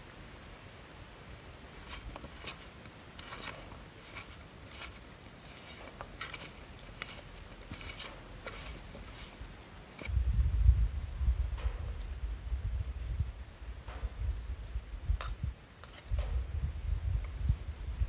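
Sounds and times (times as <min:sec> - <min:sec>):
kitchen utensil scrapes and clicks: 0:01.7 - 0:10.1.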